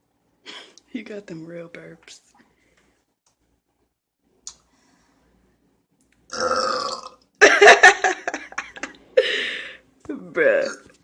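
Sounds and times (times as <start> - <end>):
person burping: 6.3 - 7.2, 10.6 - 11.0.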